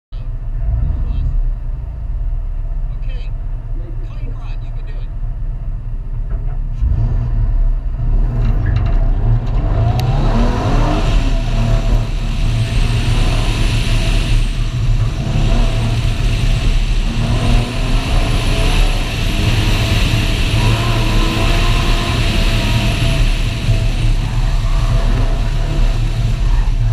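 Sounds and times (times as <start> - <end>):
car engine revving: 0.2 - 26.9.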